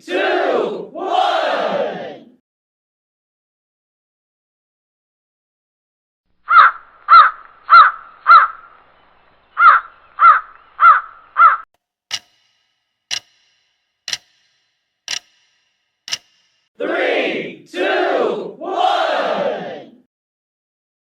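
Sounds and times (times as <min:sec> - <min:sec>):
bird calling loudly: 0:06.5 - 0:08.8, 0:09.5 - 0:11.6
timer ticking: 0:12.1 - 0:16.7.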